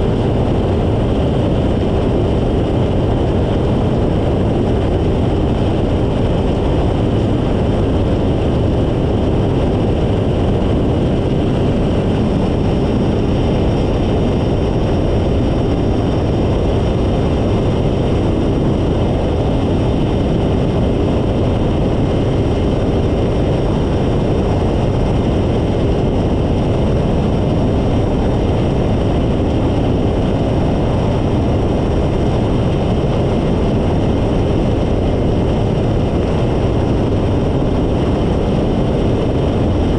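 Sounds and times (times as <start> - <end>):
ultralight engine and propeller: 0.0 - 39.9
wind rushing over microphone: 0.0 - 39.9.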